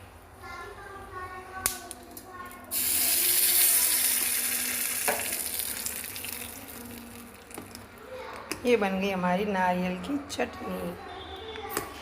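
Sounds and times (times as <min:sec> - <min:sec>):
hot oil sizzling: 0:02.7 - 0:07.8.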